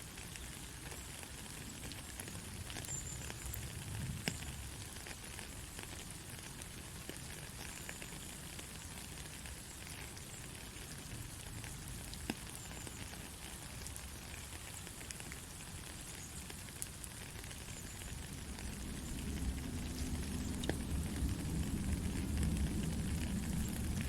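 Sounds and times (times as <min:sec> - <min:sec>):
gentle rain patter: 0:00.0 - 0:24.0
single raindrop ticking: 0:13.8 - 0:24.0.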